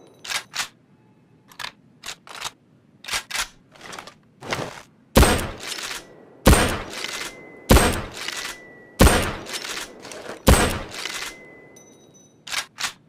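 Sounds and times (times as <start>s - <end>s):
rifle shot with ringing tail: 5.2s - 11.8s
rifle bolt clicking: 5.3s - 11.5s, 12.5s - 13.0s.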